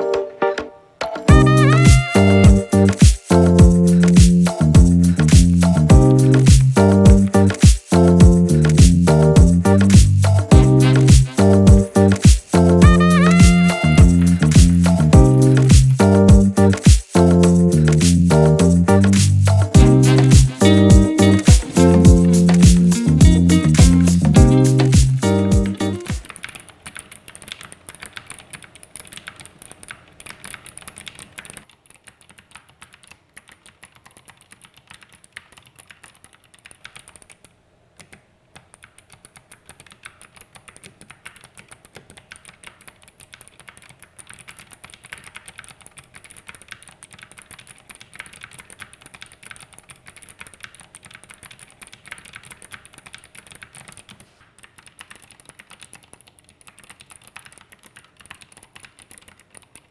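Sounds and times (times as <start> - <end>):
fast typing on clicky keyboard: 26.1 - 59.9.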